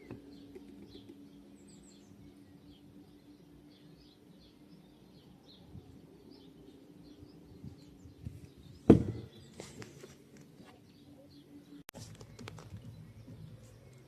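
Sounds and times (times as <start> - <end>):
birds chirping faintly: 0.0 - 14.0
low steady hum: 0.0 - 14.0
loud thump: 8.9 - 9.3.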